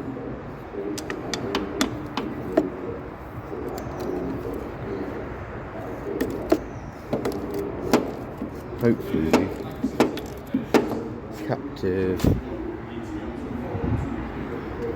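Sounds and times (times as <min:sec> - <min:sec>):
pigeon cooing: 0:00.0 - 0:11.4.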